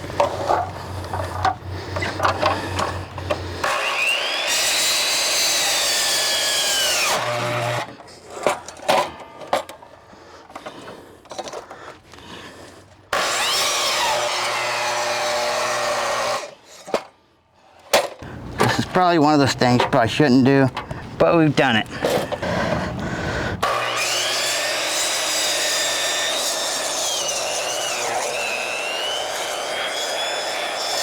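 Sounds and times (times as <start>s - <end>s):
miter saw cutting wood: 0.0s - 8.0s, 13.1s - 16.8s, 18.3s - 31.0s.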